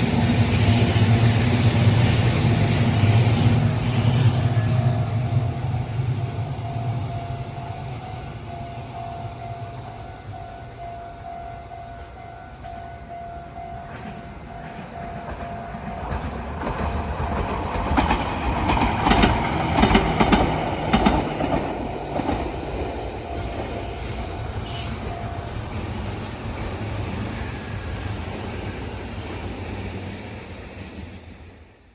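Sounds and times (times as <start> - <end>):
level-crossing warning bell: 0.0 - 29.0
train wheels clattering: 13.7 - 31.1.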